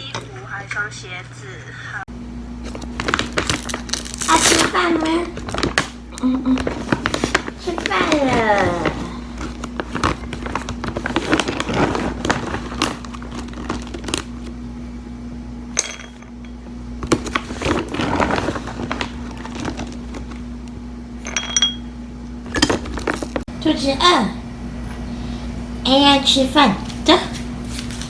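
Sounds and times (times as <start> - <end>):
steady low hum: 0.0 - 28.0
small hard objects knocking: 22.5 - 23.5.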